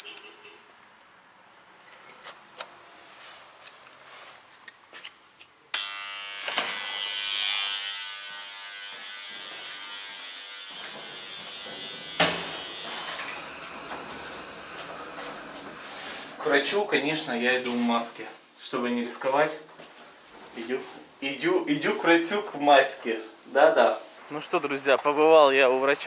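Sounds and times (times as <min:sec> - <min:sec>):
loud electric buzz: 0:05.7 - 0:16.4.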